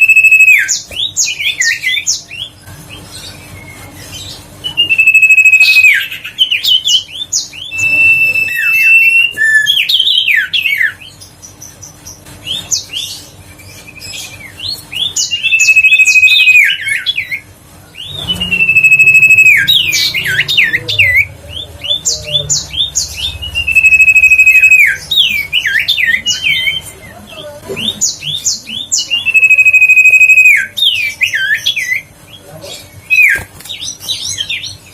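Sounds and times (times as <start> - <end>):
faint bird chirps: 0.0 - 0.7, 4.7 - 6.1, 15.4 - 16.8, 18.0 - 26.8, 28.9 - 30.8
bird whistling song: 0.0 - 2.5, 4.6 - 11.2, 14.1 - 17.4, 18.0 - 27.0, 27.9 - 32.1.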